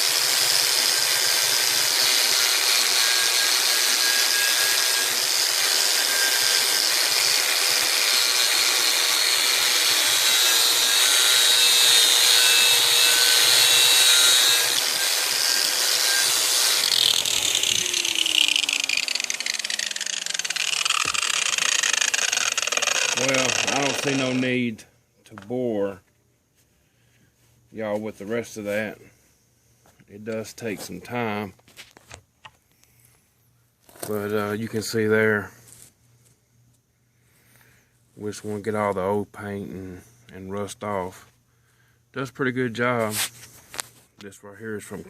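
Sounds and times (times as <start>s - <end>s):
angle grinder wire brush scrubbing: 2.1s - 24.6s
grinder whine spinning down: 13.4s - 24.6s.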